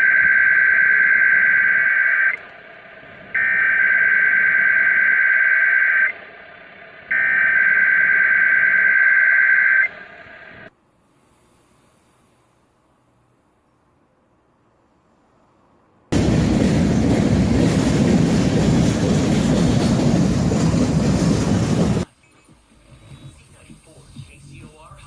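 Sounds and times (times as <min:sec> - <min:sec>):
radio hiss: 0:22.1 - 0:25.0.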